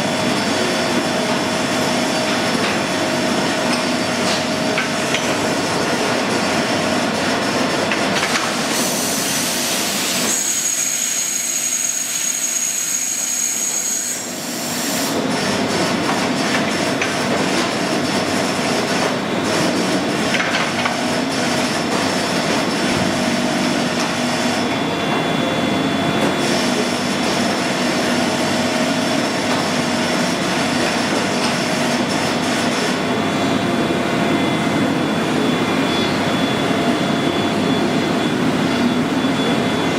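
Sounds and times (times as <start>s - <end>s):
high machine whine: 0.0s - 39.9s
milling machine drone: 21.0s - 39.9s.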